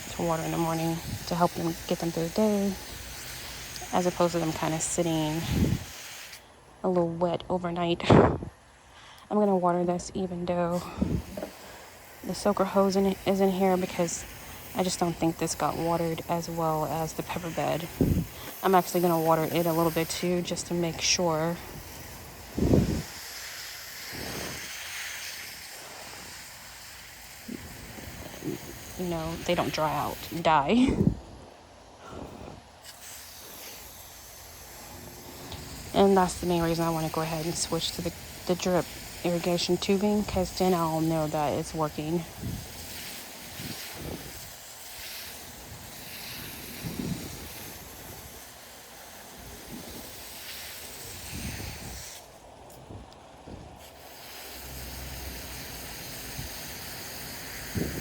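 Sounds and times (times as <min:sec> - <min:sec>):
garden hose spraying water: 0:00.0 - 0:08.0, 0:09.2 - 0:58.0
wind bumps on microphone: 0:05.4 - 0:05.9, 0:08.0 - 0:08.5, 0:10.9 - 0:11.4, 0:17.9 - 0:18.4, 0:22.6 - 0:23.1, 0:30.9 - 0:31.3, 0:42.4 - 0:42.7, 0:43.6 - 0:44.5, 0:46.6 - 0:48.4, 0:51.2 - 0:52.2, 0:52.8 - 0:53.8, 0:57.7 - 0:58.0.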